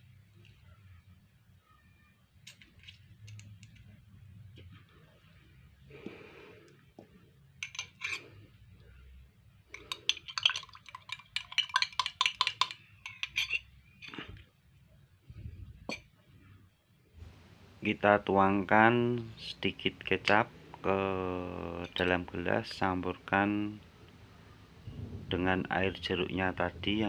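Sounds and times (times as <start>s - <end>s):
metal utensil clinking glass: 7.6s - 8.3s, 9.8s - 14.2s.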